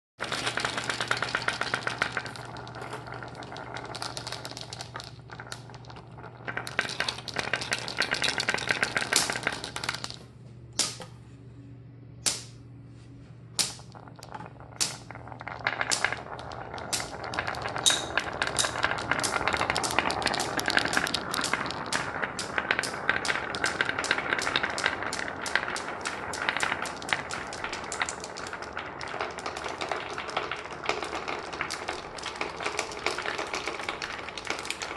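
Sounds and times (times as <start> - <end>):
marbles clattering on track: 0.2 - 10.2, 13.6 - 34.9
sharp marble clacks: 0.2 - 10.2, 10.8 - 11.1, 12.2 - 12.6, 13.6 - 34.9.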